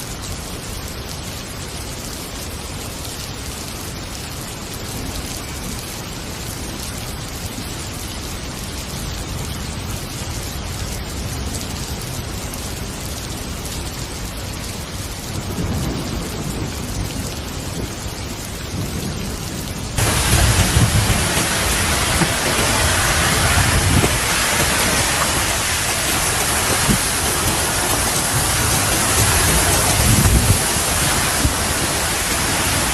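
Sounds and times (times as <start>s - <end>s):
heavy rain pouring: 0.0s - 32.9s
low rumbling: 19.8s - 32.9s.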